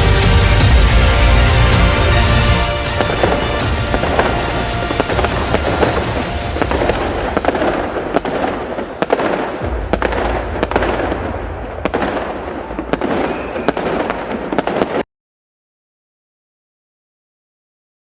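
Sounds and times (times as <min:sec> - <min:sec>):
low rumble: 0:00.0 - 0:14.6
magic crackling effects: 0:02.8 - 0:15.0
sharp cracks: 0:03.0 - 0:15.0.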